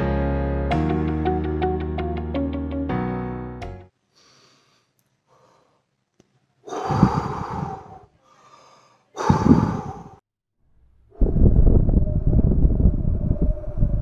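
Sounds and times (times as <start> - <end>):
person breathing heavily: 4.1 - 5.9, 6.6 - 10.2.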